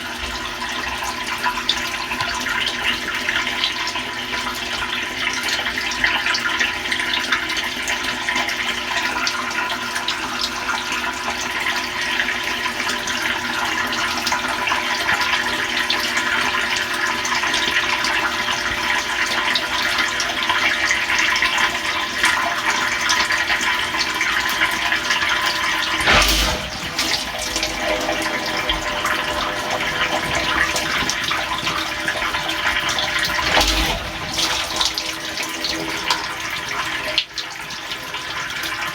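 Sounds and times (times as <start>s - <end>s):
water spraying in dishwasher: 24.6s - 37.4s
steady hum: 25.8s - 36.2s.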